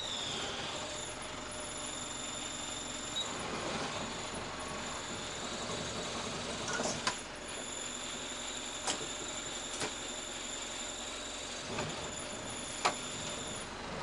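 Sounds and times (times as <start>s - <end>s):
diesel truck engine running: 0.0s - 14.0s
faint high whine: 6.7s - 13.7s.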